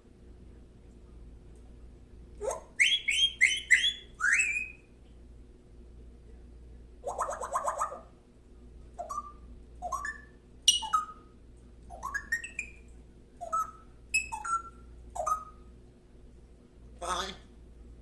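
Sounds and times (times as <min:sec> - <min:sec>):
pet squeaky rising calls: 0:02.4 - 0:04.8, 0:07.0 - 0:08.1, 0:09.0 - 0:11.2, 0:11.9 - 0:15.6.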